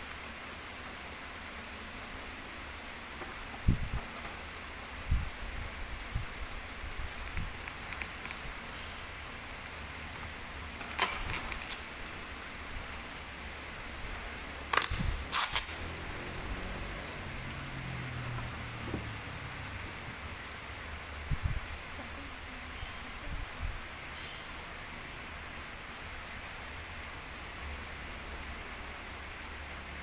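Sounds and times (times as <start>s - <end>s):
faint steady hiss: 0.0s - 30.0s
packaging crackling: 7.2s - 13.3s, 14.6s - 16.0s.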